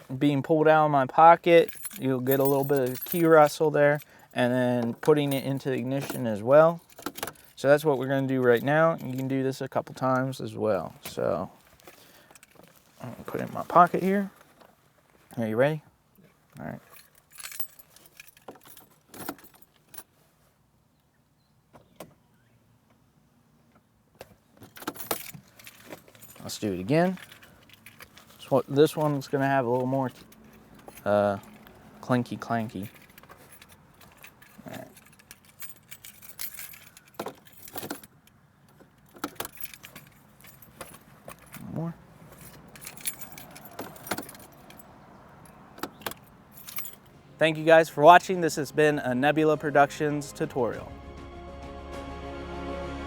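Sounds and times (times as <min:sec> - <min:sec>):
car keys jingling: 0:01.4 - 0:14.3, 0:16.8 - 0:20.1, 0:24.6 - 0:50.8.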